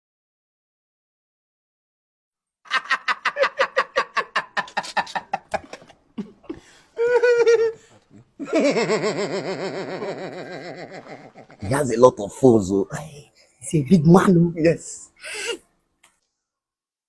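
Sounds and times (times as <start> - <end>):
person laughing heartily: 2.7 - 11.8.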